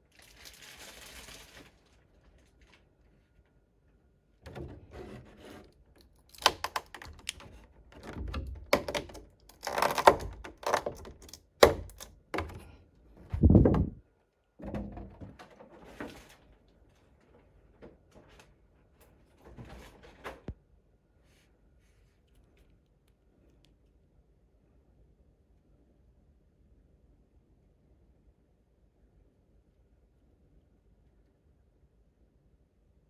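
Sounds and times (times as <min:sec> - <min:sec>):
plastic toy clicks and knocks: 0:06.2 - 0:12.7
heavy thump: 0:13.2 - 0:14.0.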